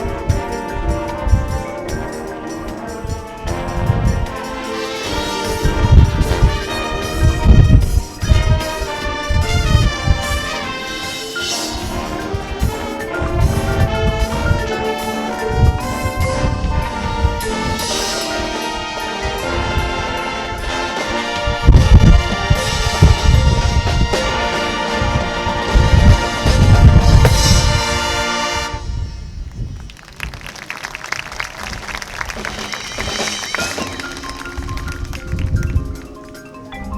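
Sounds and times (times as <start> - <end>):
brass sustaining chords: 0.0 - 29.7
bass drum hits: 26.0 - 28.0.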